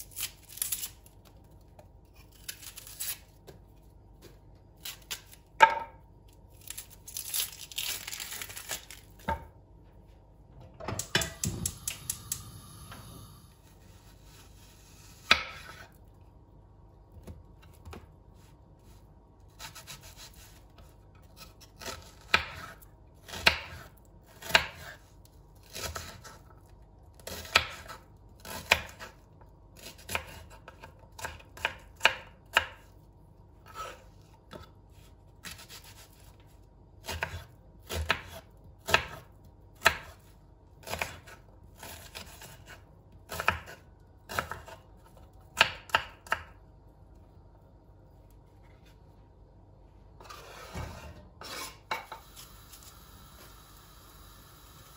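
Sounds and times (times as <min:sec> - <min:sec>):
knife chopping on cutting board: 0:15.2 - 0:15.8, 0:37.0 - 0:40.2, 0:40.8 - 0:44.8.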